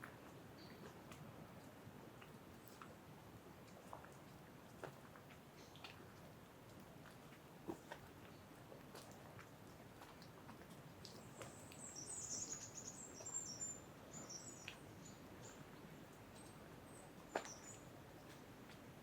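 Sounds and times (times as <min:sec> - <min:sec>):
wind hissing in trees: 0:11.2 - 0:19.0
small bird twittering: 0:11.5 - 0:15.2.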